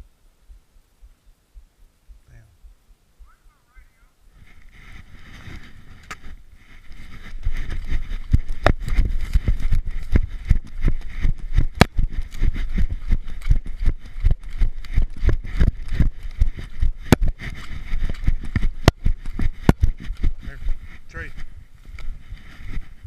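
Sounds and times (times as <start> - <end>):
running footsteps: 4.4 - 23.0.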